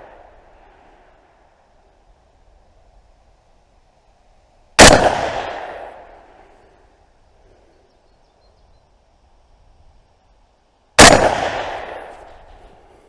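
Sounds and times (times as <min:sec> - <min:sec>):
rifle shot: 0:04.8 - 0:06.2, 0:11.0 - 0:12.9.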